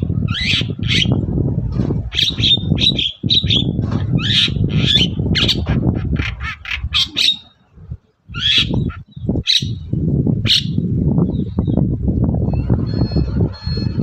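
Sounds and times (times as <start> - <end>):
steady low rumble: 0.0 - 14.0
bird harsh rasping squawks: 0.3 - 1.1, 2.1 - 7.6, 8.3 - 9.8.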